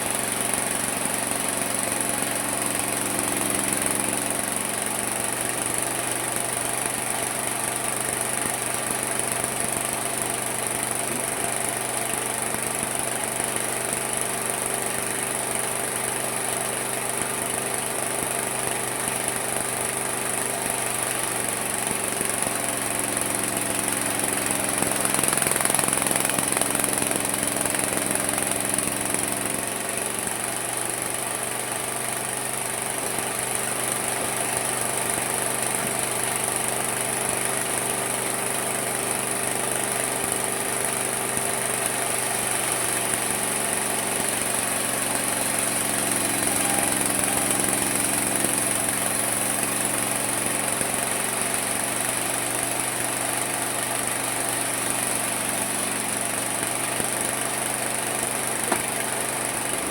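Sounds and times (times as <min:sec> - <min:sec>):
sawmill motor hum: 0:00.0 - 0:59.9.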